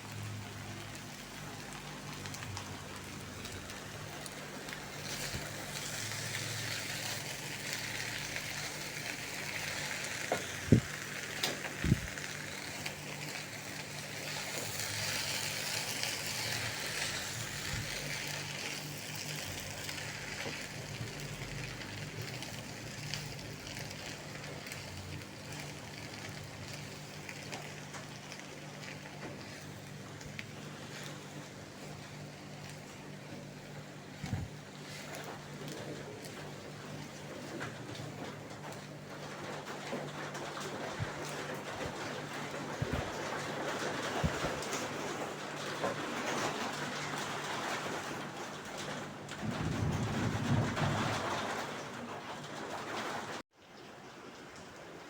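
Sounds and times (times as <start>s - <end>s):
food sizzling in a hot pan: 3.2s - 28.4s.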